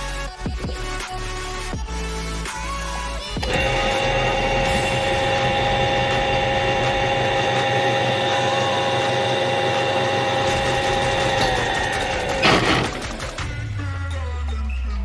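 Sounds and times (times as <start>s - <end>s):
machine motor whining and humming: 3.4s - 13.9s.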